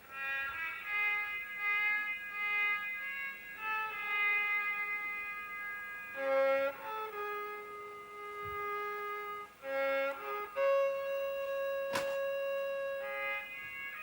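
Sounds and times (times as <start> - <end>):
slow violin melody: 0.0 - 14.0.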